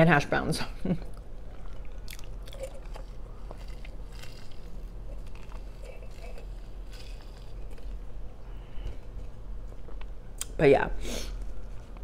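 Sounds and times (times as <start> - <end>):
steady low hum: 0.0 - 12.0
chewing and crunching food: 1.0 - 10.5.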